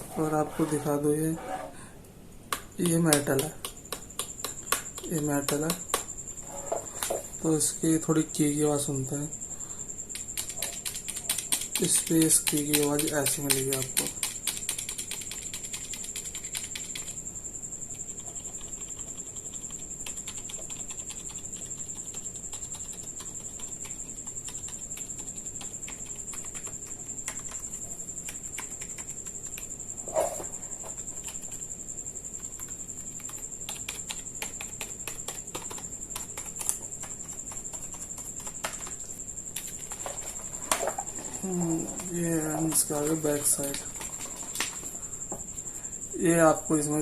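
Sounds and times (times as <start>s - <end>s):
keyboard keys clicking: 10.1s - 17.1s, 32.5s - 39.0s.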